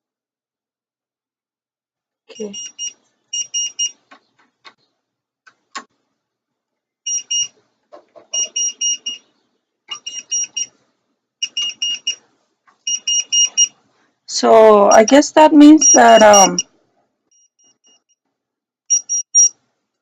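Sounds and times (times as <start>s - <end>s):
voltage tester beeping: 2.3s - 4.0s, 7.1s - 7.5s, 8.3s - 9.2s, 9.9s - 10.7s, 11.4s - 12.2s, 12.9s - 13.8s, 14.9s - 16.6s, 18.9s - 19.5s.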